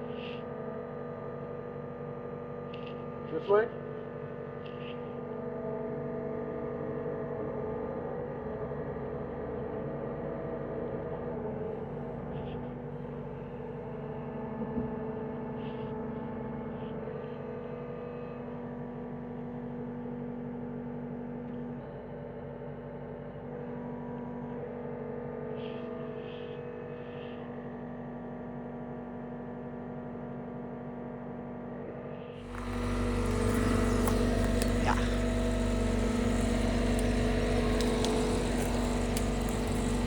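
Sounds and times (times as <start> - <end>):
diesel engine droning: 32.4 - 40.0.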